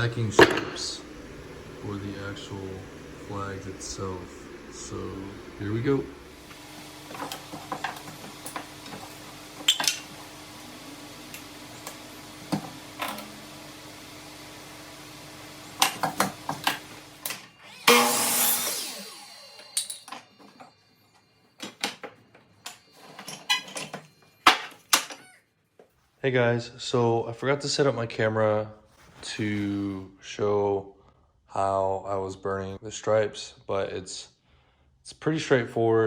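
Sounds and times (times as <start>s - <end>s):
faint steady hum: 0.0s - 32.8s.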